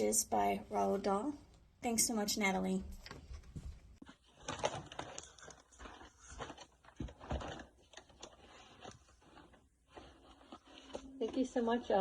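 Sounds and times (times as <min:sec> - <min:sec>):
paper and packaging rustling: 0:03.4 - 0:12.0.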